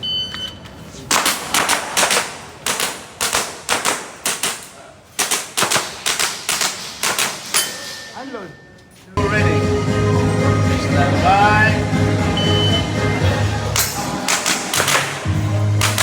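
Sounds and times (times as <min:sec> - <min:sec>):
airsoft pistol shots: 0:05.2 - 0:07.6, 0:14.2 - 0:16.0.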